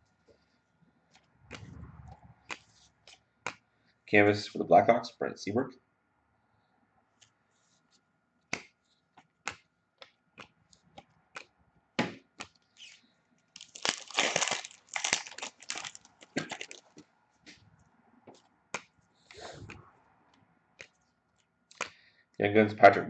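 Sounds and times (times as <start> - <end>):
wrapper crinkling: 12.8 - 17.0
card pack wrapper clicking: 13.6 - 16.9.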